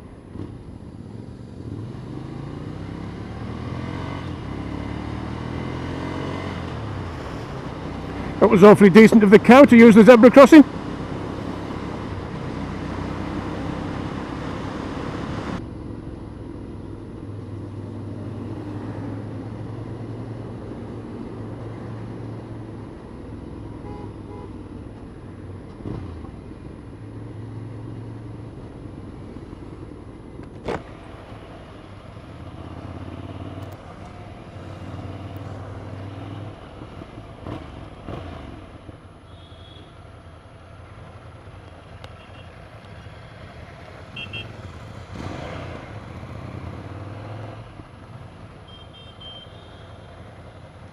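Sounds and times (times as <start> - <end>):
road noise: 0.0 - 50.9.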